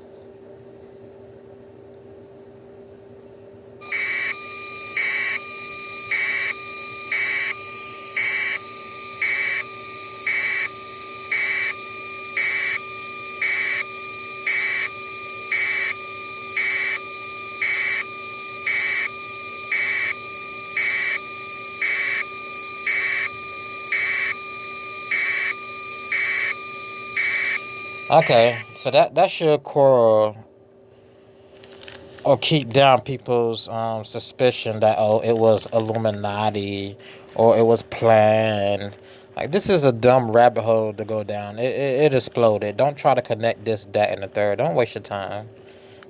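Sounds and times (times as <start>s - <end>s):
pulsing electronic beeping: 3.8s - 28.9s.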